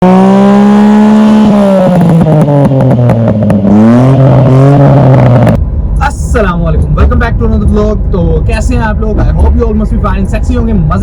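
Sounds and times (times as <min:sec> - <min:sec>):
small car engine revving: 0:00.0 - 0:05.6
exhaust pops and crackles: 0:01.2 - 0:11.0.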